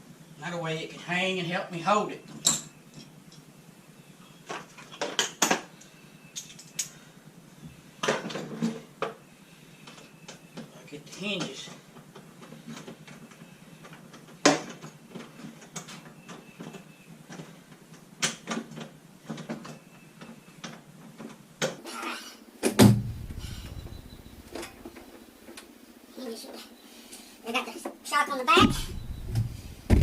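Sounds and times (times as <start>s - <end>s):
clicks and knocks of parts handled: 6.4s - 7.0s
heavy thump: 22.7s - 24.9s, 28.6s - 30.0s.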